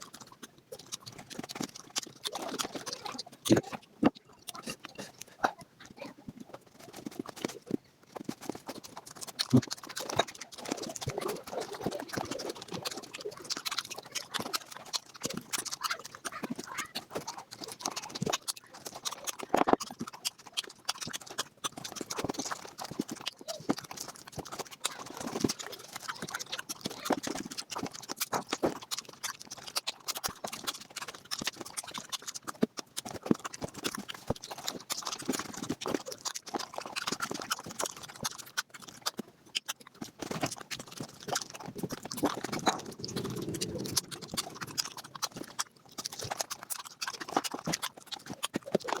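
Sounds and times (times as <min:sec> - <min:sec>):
sped-up eating sounds: 0:00.0 - 0:49.0.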